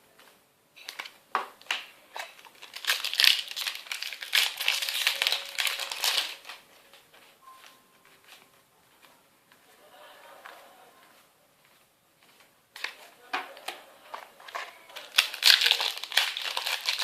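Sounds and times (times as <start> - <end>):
foil wrapper crinkling: 0.8 - 7.0, 14.4 - 17.0.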